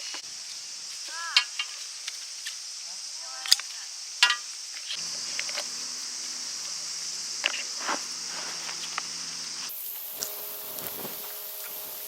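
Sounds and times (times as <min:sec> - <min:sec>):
insect drone: 0:00.0 - 0:12.0
hands rustling in garden: 0:04.7 - 0:12.0.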